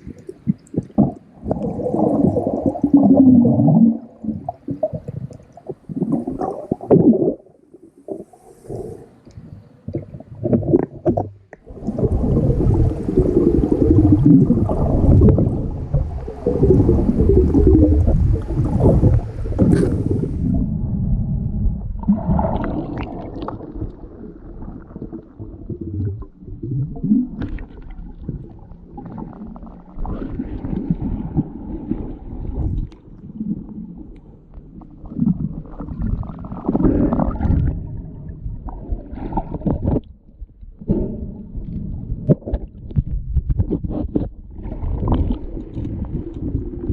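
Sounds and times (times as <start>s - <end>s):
underwater gurgling and sloshing: 0.0s - 46.9s
low rumbling: 11.6s - 46.9s.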